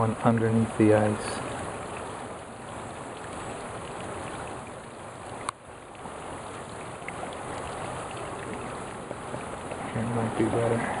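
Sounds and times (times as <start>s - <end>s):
creek rushing under ice: 0.0s - 11.0s.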